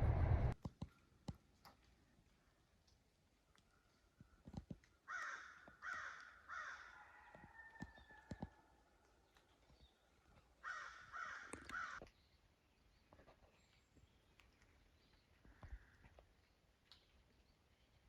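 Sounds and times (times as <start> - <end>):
crow cawing: 5.1 - 7.2, 10.6 - 12.0.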